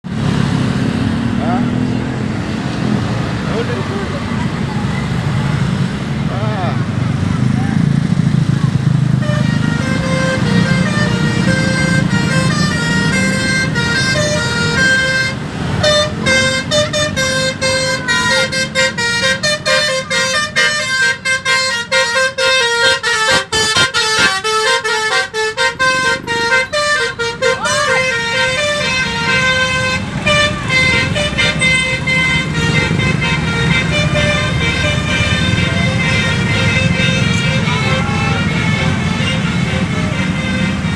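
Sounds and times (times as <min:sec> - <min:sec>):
truck engine running: 0:00.0 - 0:40.9
musical horn playing a tune: 0:09.1 - 0:40.9.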